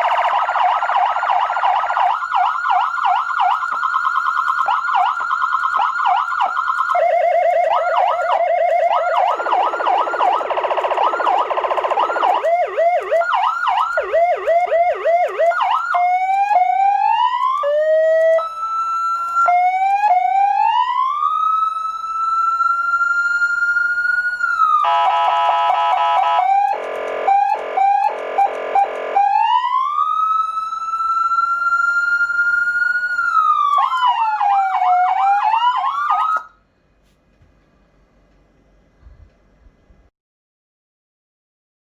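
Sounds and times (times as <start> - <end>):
electronic siren wailing and yelping: 0.0 - 36.5
blaring horn pulses: 24.7 - 29.7.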